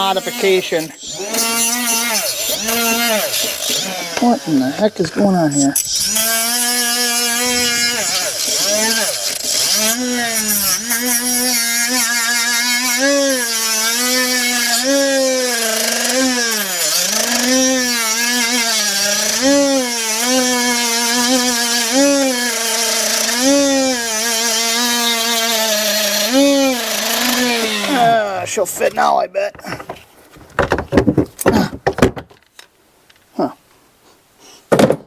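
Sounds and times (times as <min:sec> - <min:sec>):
handheld power tool grinding: 0:00.0 - 0:31.6.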